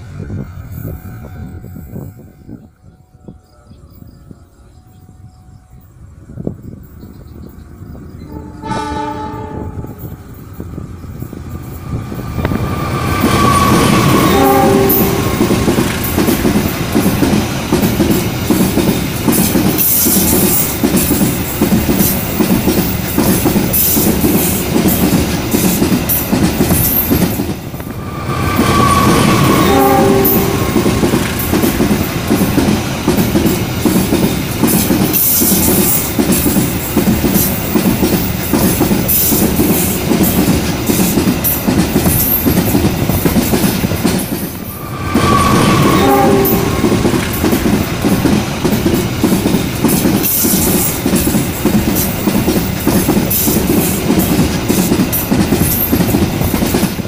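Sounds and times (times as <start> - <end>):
train rumbling: 0.0 - 57.0
train horn: 8.2 - 10.3, 12.5 - 15.9, 28.0 - 31.5, 44.7 - 47.6.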